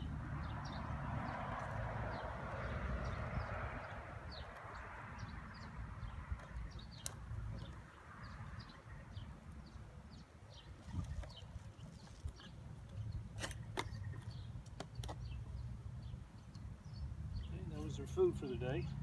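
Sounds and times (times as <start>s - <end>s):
wind rumbling on microphone: 0.0s - 14.6s
small birds chirping: 0.0s - 19.0s.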